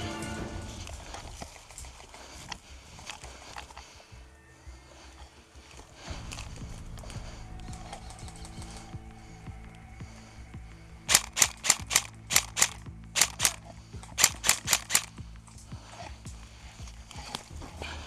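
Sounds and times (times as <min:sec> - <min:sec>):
airsoft gun shots: 0:11.1 - 0:13.6, 0:14.2 - 0:15.2.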